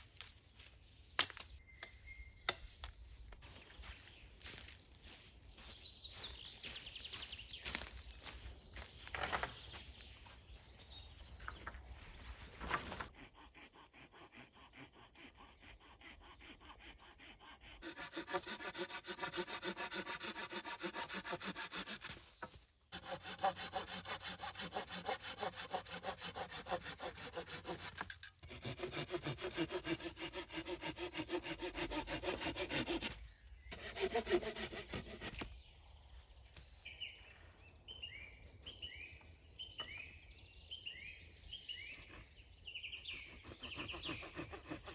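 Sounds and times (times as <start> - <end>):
birds chirping: 0.4 - 44.9
hand saw cutting wood: 12.7 - 35.6, 42.0 - 42.3, 43.0 - 44.9.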